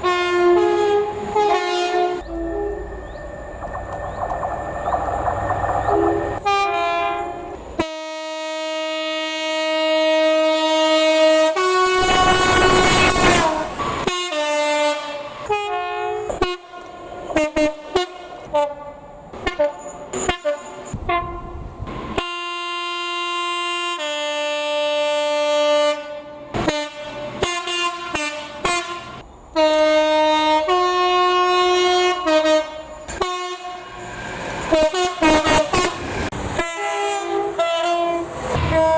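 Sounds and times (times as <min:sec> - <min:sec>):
train horn blasts: 0:00.0 - 0:03.2, 0:05.8 - 0:21.6, 0:22.2 - 0:34.0, 0:34.6 - 0:38.9
rushing noise: 0:02.2 - 0:07.8, 0:38.2 - 0:38.9.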